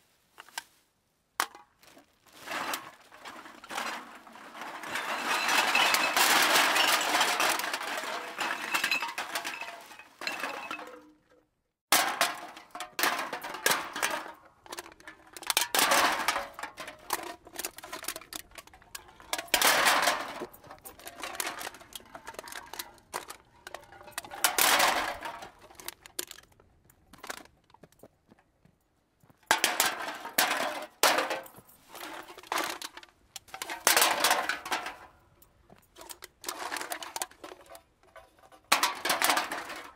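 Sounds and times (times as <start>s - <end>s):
clattering crash: 2.4s - 11.1s, 11.9s - 26.4s, 36.0s - 39.9s.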